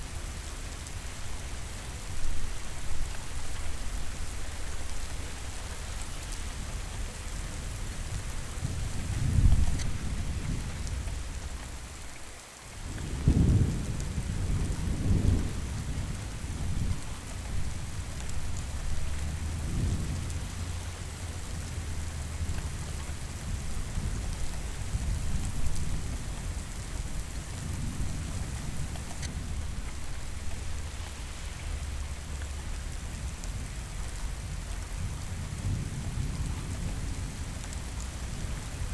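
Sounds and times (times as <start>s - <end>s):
steady rain: 0.0s - 38.9s
rolling thunder: 12.9s - 30.8s.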